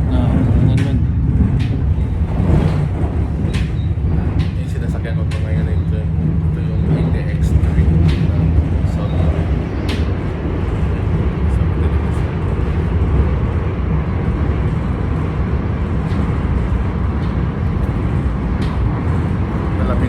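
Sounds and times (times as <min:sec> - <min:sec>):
train rumbling on track: 0:00.0 - 0:20.0
faint track clicks: 0:00.6 - 0:13.8.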